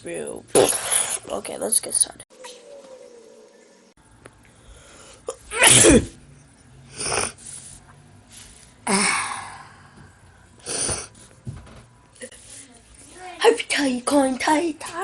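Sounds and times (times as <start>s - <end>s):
man sneezing: 5.5s - 6.2s.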